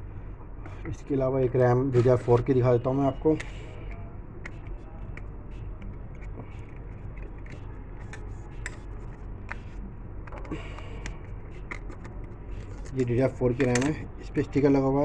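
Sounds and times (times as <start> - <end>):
steady low hum: 0.0 - 15.0
clicks of hardware being handled: 3.4 - 14.0.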